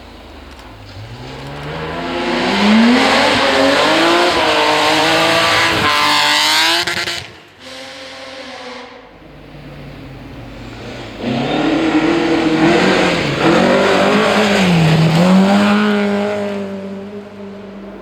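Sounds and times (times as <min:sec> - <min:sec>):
rally car engine revving: 0:00.5 - 0:18.0.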